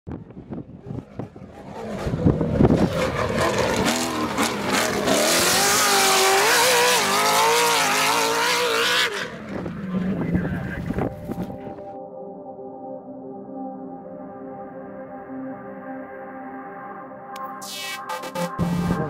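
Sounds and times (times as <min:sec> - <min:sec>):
engine revving at high revs: 0:01.6 - 0:09.4.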